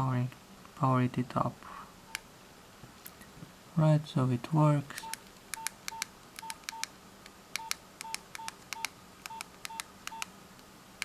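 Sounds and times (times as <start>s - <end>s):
phone keypad clicks: 5.0s - 6.9s, 7.5s - 10.3s
short keypad beeps: 7.6s - 10.3s.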